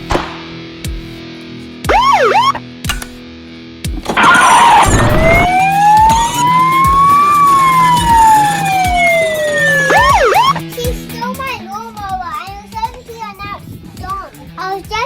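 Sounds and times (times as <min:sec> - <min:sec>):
police siren wail: 0:01.9 - 0:02.6, 0:04.1 - 0:10.6
rush of noise: 0:04.1 - 0:09.6.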